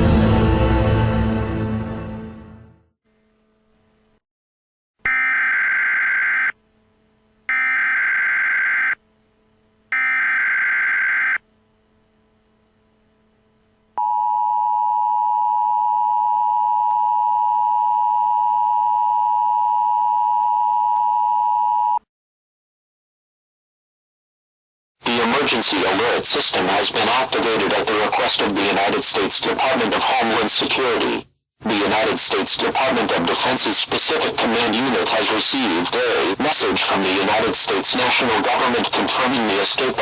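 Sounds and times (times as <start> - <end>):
screeching data tone bursts: 7.5 - 9.0.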